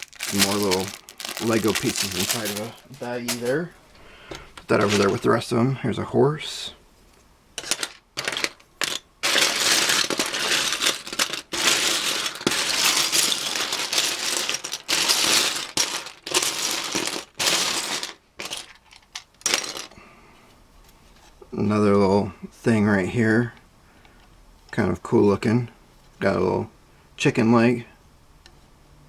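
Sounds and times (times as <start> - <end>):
plastic toy bricks clattering: 0.0 - 3.6, 7.6 - 20.0.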